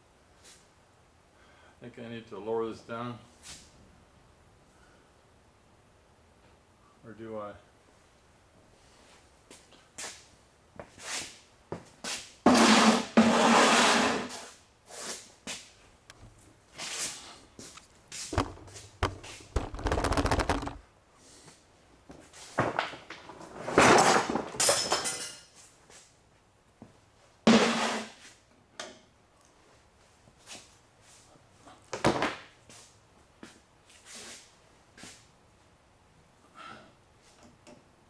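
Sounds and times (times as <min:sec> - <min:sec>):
rapid clicks: 0:17.8 - 0:20.8
metal tools clanking and scraping: 0:24.6 - 0:25.5.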